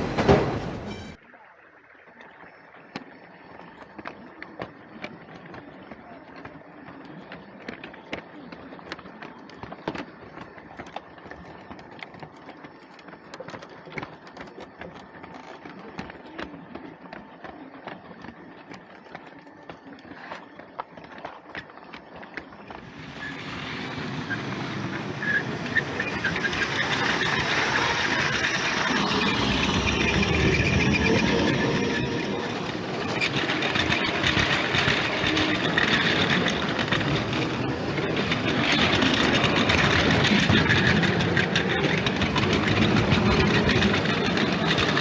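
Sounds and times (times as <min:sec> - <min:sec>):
train running noise: 0:00.0 - 0:01.2, 0:22.3 - 0:45.0.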